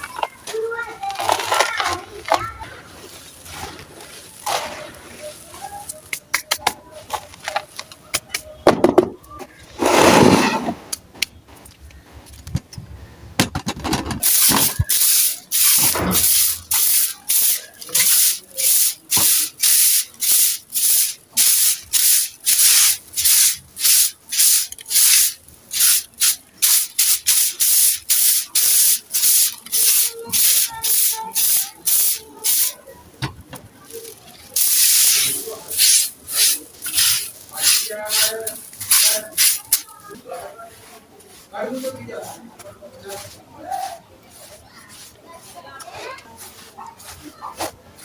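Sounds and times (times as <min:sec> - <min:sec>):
sand-cement scraping: 0:00.5 - 0:06.1, 0:09.6 - 0:11.0, 0:13.7 - 0:32.8, 0:33.7 - 0:48.0.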